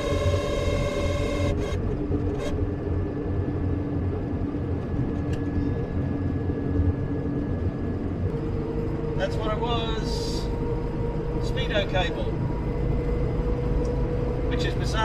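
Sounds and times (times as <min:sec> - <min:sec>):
faint whine: 0:00.0 - 0:02.7
car engine rumble: 0:00.0 - 0:15.0.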